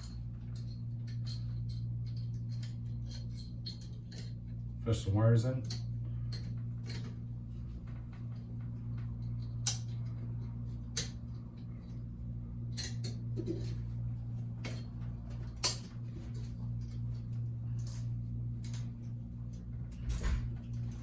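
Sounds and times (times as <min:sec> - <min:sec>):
steady low hum: 0:00.0 - 0:21.0.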